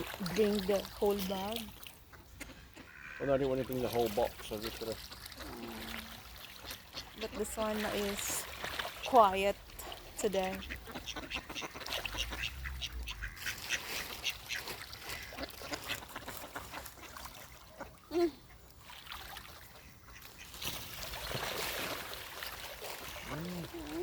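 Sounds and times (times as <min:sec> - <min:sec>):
water splashing: 0:00.0 - 0:24.0
ducks quacking: 0:00.2 - 0:08.4, 0:10.2 - 0:18.1, 0:19.8 - 0:20.6.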